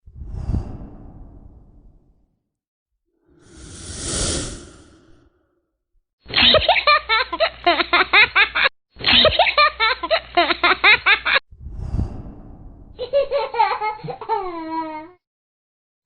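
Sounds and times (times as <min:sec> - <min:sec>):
breathy rush of air: 0:00.1 - 0:02.1, 0:03.2 - 0:05.3, 0:11.6 - 0:13.0
laughter in quick bursts: 0:06.3 - 0:11.4, 0:13.0 - 0:15.1.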